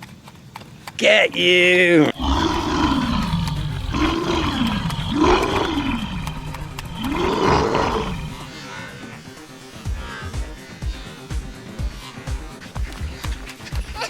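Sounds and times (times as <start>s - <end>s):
person making play roars: 2.1s - 8.6s.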